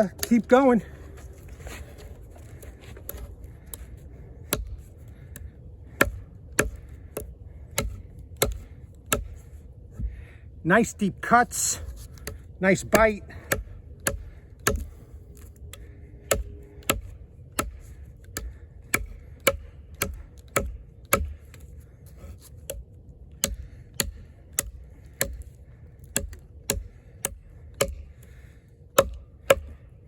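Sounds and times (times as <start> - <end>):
knife chopping into wood: 12.2 - 14.9, 16.3 - 17.8, 18.4 - 21.4, 23.4 - 25.4, 26.1 - 28.1, 29.0 - 29.7.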